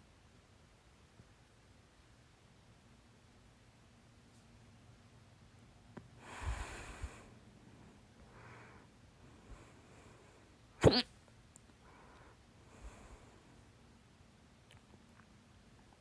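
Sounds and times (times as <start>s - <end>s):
soft breaths: 6.0s - 10.7s, 11.7s - 13.9s
loud sharp hiccup: 10.8s - 11.1s.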